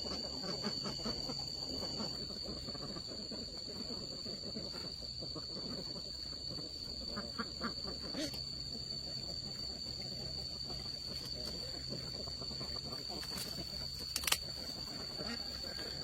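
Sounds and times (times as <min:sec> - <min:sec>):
ducks quacking: 0:00.0 - 0:16.0
steady high-pitched whine: 0:00.0 - 0:16.0
sharp click: 0:14.1 - 0:14.4.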